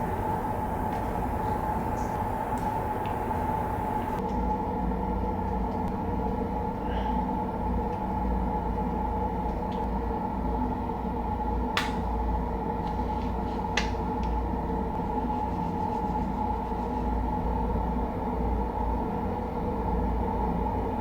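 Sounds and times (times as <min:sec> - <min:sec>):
constant mid-pitched tone: 0:00.0 - 0:04.2
low mechanical hum and rumble: 0:00.0 - 0:04.3.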